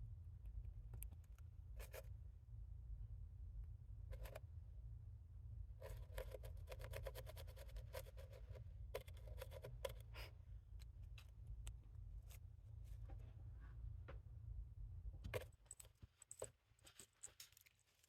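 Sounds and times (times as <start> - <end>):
low steady hum: 0.0 - 18.0
cat claws scratching and clicking: 4.1 - 4.4, 5.8 - 10.2.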